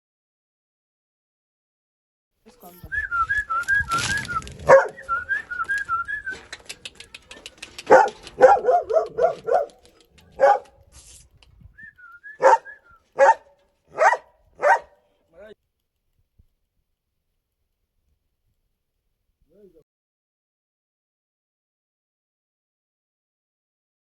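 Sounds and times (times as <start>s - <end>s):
puppy whining: 2.5s - 10.8s
puppy barking: 2.6s - 10.9s, 12.4s - 15.0s.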